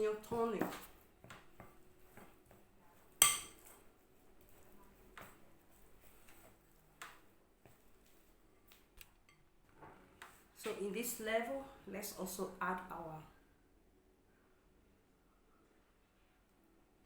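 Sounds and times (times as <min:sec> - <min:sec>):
soft scraping in bowl: 0:00.6 - 0:07.0
utensil clinking against bowl: 0:03.2 - 0:03.7.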